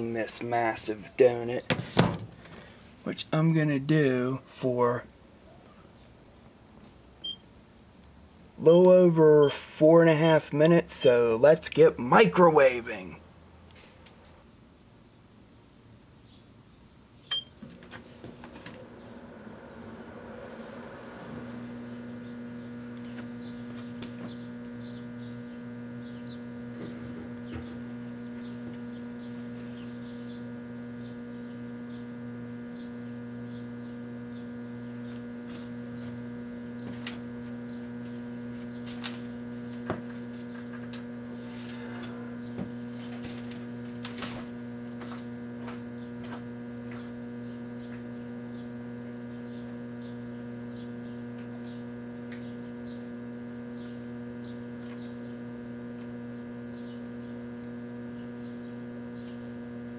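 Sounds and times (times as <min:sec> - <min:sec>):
microwave oven humming: 0:07.2 - 0:07.5, 0:17.3 - 0:59.9
sharp electrical clicks and crackles: 0:21.7 - 0:59.9.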